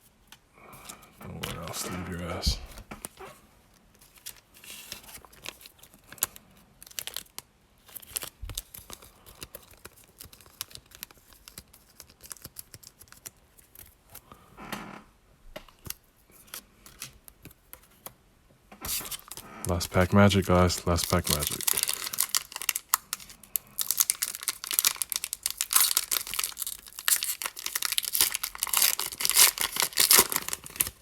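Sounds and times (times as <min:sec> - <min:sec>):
foil wrapper crinkling and tearing: 0:03.9 - 0:14.3, 0:19.0 - 0:31.0.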